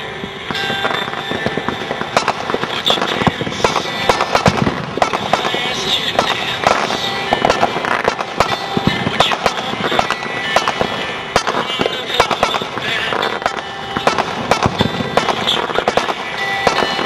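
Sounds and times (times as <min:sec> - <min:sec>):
fireworks crackling: 0:00.0 - 0:17.0
fireworks exploding: 0:00.0 - 0:17.0.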